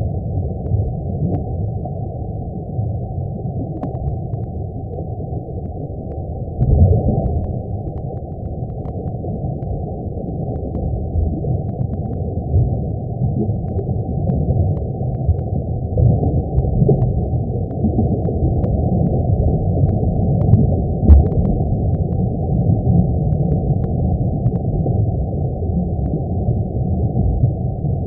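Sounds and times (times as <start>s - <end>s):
deep low rumble: 0.0s - 28.0s
faint crackles: 0.1s - 28.0s.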